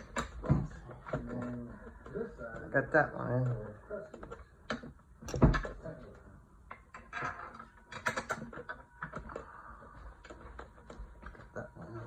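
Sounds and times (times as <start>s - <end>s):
small parts and tools clicking: 6.7s - 12.0s.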